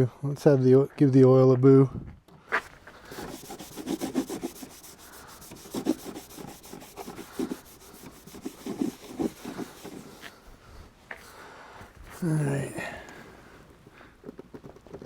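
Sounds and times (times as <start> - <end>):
dipstick rubbing and scraping: 3.1 - 10.4.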